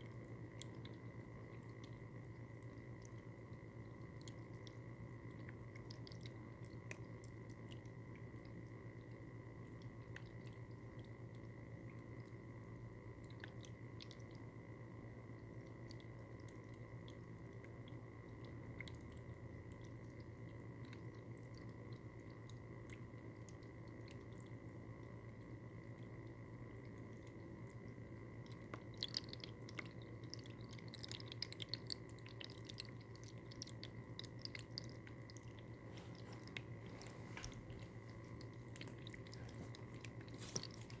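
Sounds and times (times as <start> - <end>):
small pump humming: 0.0 - 41.0
trickling water: 0.0 - 41.0.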